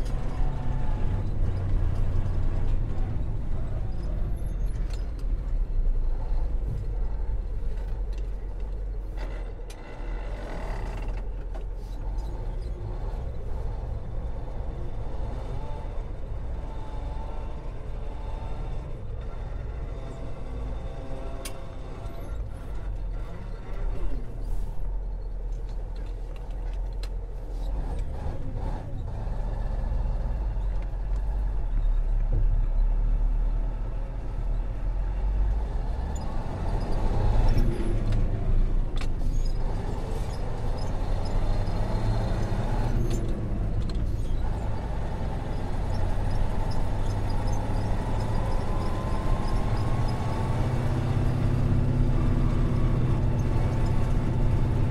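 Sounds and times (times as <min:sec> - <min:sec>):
road noise: 0:00.0 - 0:54.9
truck engine rumbling: 0:00.0 - 0:54.9.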